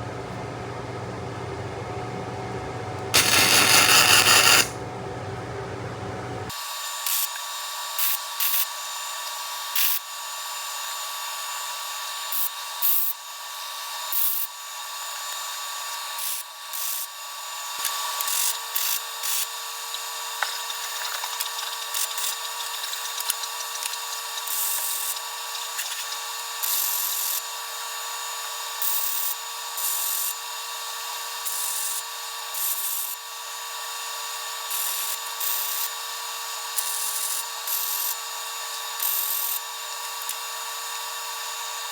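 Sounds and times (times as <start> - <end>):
angle grinder cutting steel: 3.1 - 4.8.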